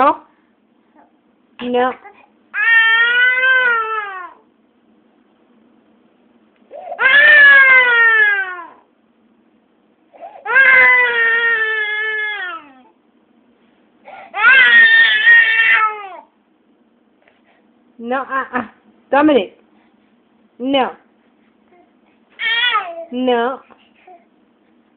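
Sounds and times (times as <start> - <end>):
baby crying: 2.6 - 4.4, 6.7 - 8.8, 10.2 - 12.9, 14.2 - 16.3, 22.4 - 23.1.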